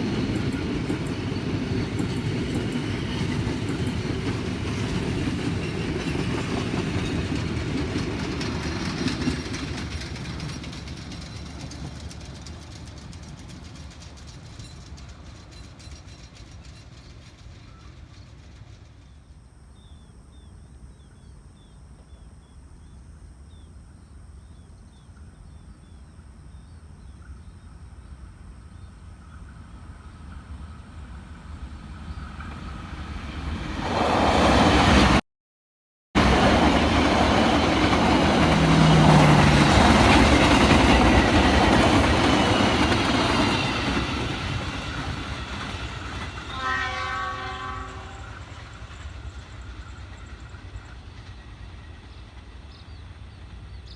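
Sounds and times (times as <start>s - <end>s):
train passing: 0.0s - 35.2s, 36.2s - 53.9s
multi-toned train horn: 46.2s - 48.9s.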